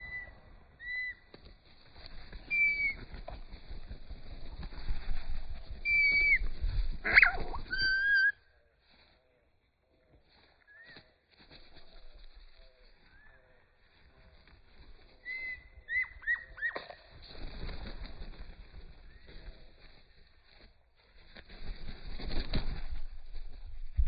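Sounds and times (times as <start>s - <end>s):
songbirds whistling: 0.0s - 1.3s, 2.4s - 3.0s, 5.8s - 8.4s, 15.2s - 17.0s
loud rustle: 1.3s - 8.0s, 17.1s - 24.0s
low wind-like rumble: 3.0s - 7.7s.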